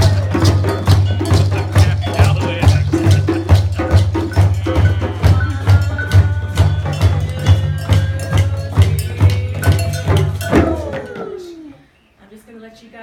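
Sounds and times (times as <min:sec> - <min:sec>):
music with bass-heavy beat: 0:00.0 - 0:05.2.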